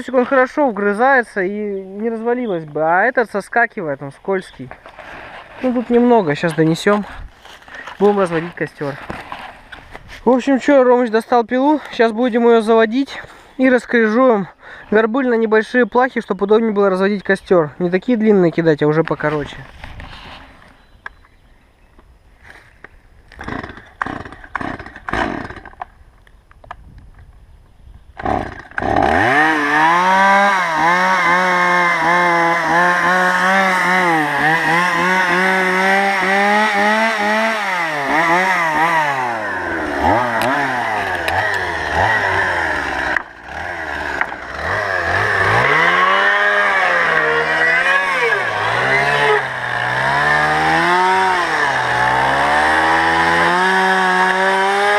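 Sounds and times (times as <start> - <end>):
chainsaw engine revving: 23.3 - 25.8, 28.2 - 54.9
chainsaw starter cord pulls: 23.3 - 25.9, 28.2 - 54.9.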